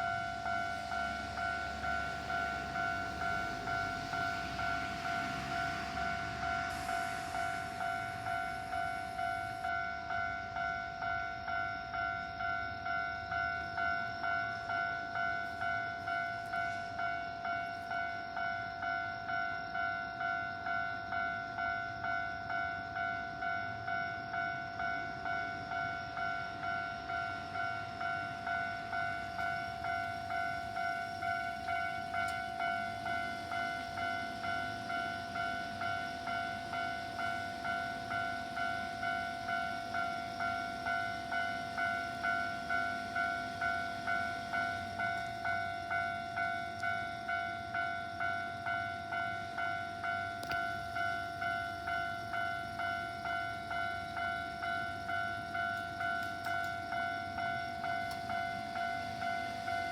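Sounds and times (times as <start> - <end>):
level-crossing two-tone bell: 0.0 - 59.9.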